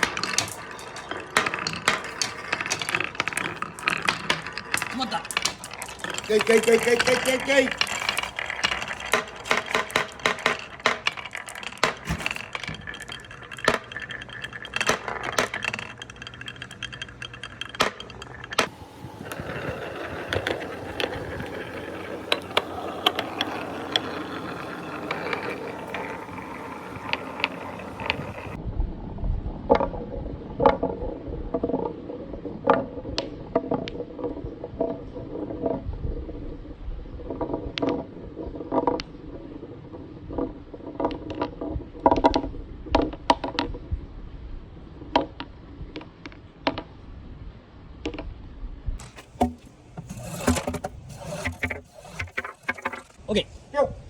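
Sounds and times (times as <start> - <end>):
balls rolling down marble run: 0.0 - 28.6, 29.7 - 44.0, 49.0 - 53.4
low rumble: 28.6 - 31.7.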